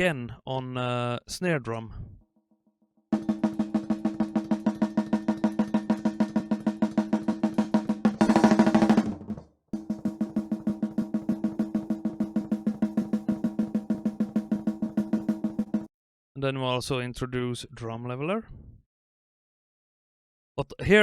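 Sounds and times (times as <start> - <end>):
rapid snare drum hits: 3.1 - 15.9.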